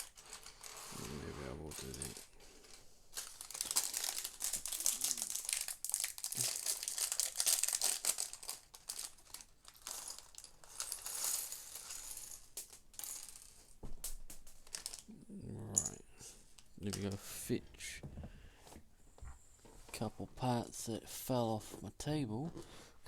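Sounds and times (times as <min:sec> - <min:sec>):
plastic bag crinkling: 0:00.0 - 0:02.3, 0:03.1 - 0:10.9, 0:14.5 - 0:15.1.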